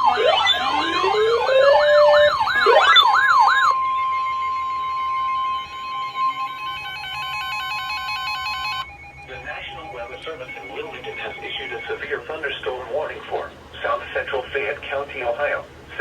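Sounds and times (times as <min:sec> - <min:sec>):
warbling beep pattern: 0:00.0 - 0:12.2
steady alert tone: 0:00.0 - 0:12.4
electronic siren wails: 0:00.0 - 0:12.7.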